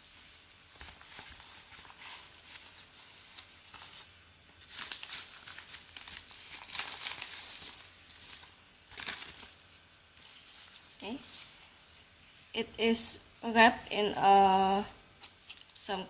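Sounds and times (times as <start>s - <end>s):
plastic packaging crinkling: 0.0s - 11.6s
packaging tearing: 4.6s - 9.6s.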